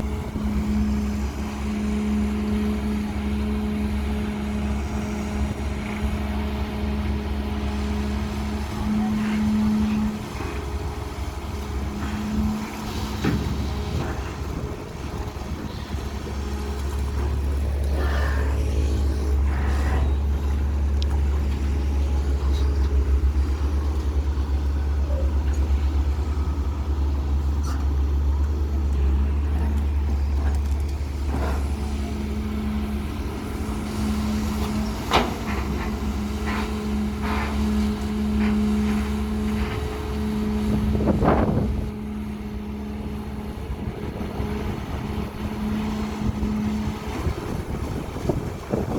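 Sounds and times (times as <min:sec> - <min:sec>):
excavator diesel engine running: 0:00.0 - 0:48.9.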